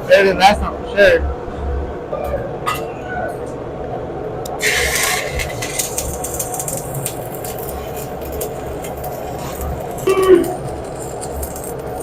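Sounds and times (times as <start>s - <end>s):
welding machinery drone: 4.1s - 12.0s
clicks and crackles: 4.4s - 12.0s.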